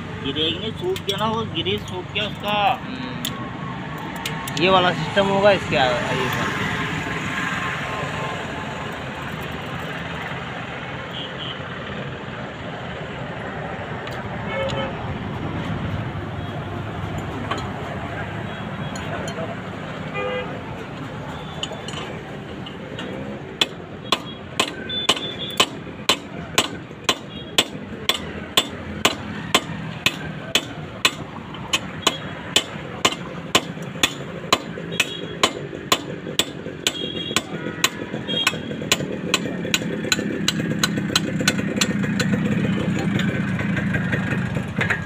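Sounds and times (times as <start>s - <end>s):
engine running: 20.9s - 45.0s
hammering: 23.0s - 43.8s.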